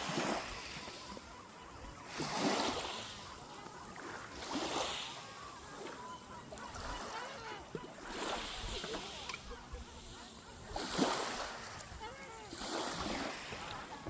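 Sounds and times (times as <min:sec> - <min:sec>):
faint gull calls: 0:00.0 - 0:14.0
waves washing in: 0:00.0 - 0:14.0.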